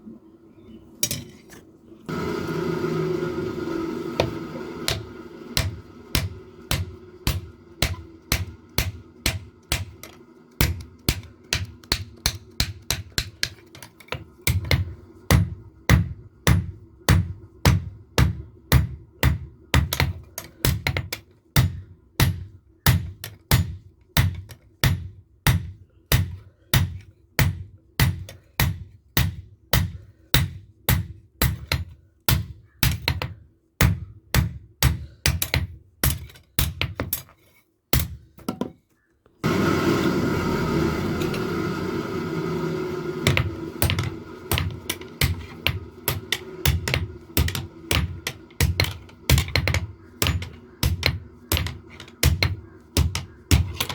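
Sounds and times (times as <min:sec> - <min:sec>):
hammer striking steel on anvil: 0:04.9 - 0:13.9, 0:14.5 - 0:37.3, 0:43.2 - 0:53.9.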